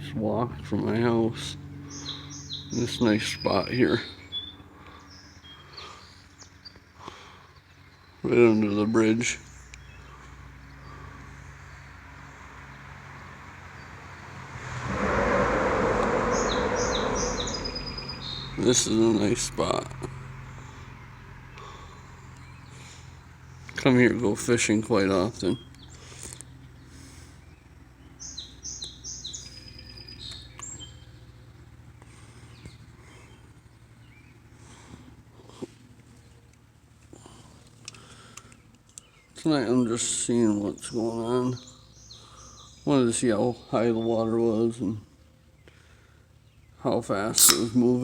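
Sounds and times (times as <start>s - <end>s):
songbird singing: 1.6s - 34.5s, 38.0s - 48.0s
vehicle crossing overhead bridge: 10.4s - 23.6s.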